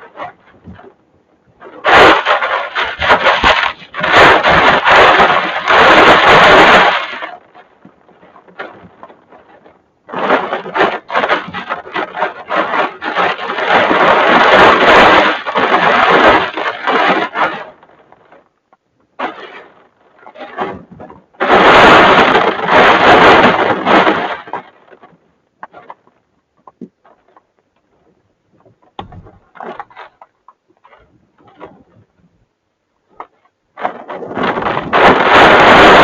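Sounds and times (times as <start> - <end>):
strong wind gusting: 0.0 - 7.6, 34.0 - 36.0.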